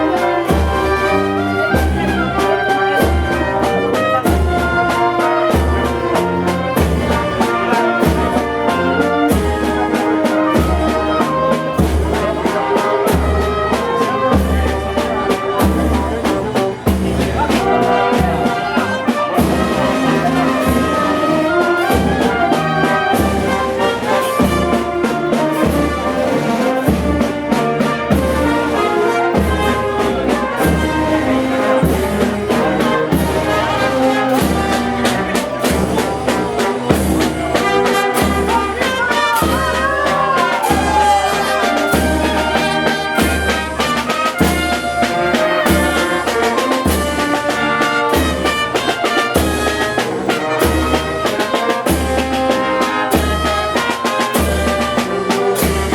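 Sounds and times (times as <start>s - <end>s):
brass band playing a march: 0.0s - 55.9s
bass drum beat: 34.4s - 42.6s.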